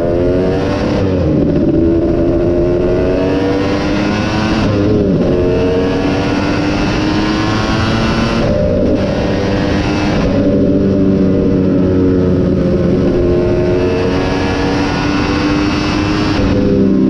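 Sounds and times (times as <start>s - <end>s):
motocross bike engine revving hard: 0.1s - 10.8s.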